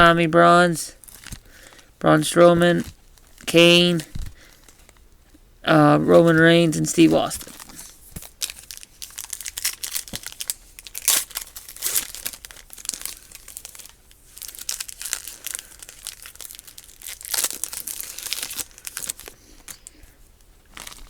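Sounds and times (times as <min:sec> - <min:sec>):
card pack wrapper crinkling and tearing: 0:06.1 - 0:20.0, 0:20.7 - 0:21.0.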